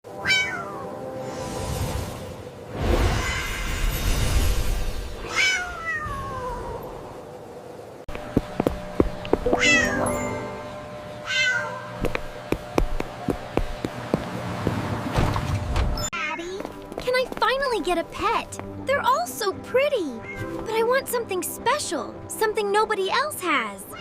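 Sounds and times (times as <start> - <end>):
cat meowing: 0.2 - 0.8, 9.5 - 10.0, 11.2 - 11.9
background music: 9.4 - 11.1, 16.2 - 24.0.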